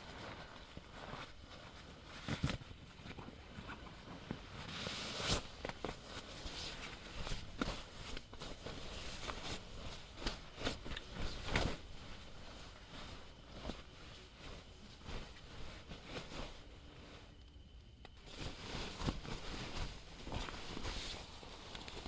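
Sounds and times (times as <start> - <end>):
rustling and knocking in tent: 0.0 - 17.3, 18.2 - 22.0.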